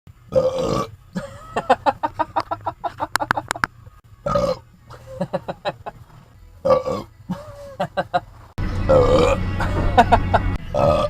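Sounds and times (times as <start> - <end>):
low car cabin hum: 0.1 - 10.8
man burping: 0.3 - 1.7, 4.2 - 5.3, 6.6 - 8.0, 8.9 - 10.1, 10.7 - 11.0.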